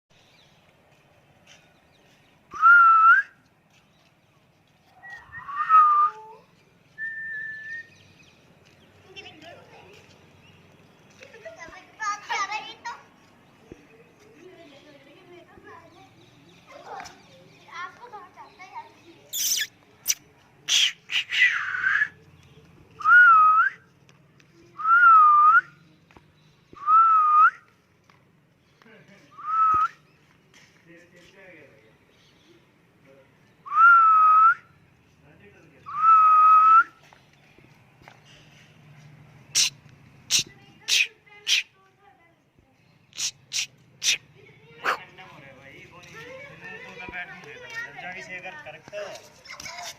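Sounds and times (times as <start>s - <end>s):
harsh parrot call: 19.3s - 22.1s, 39.5s - 41.8s, 43.1s - 45.0s.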